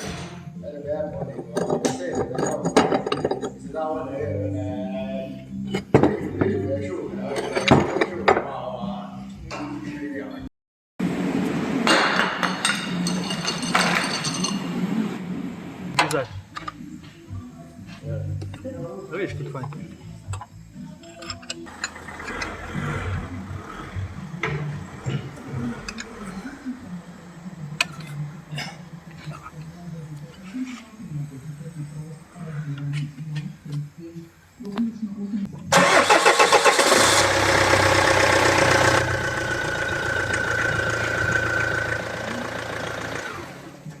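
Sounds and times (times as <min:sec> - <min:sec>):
diesel engine running: 0:21.7 - 0:29.7, 0:35.7 - 0:43.9.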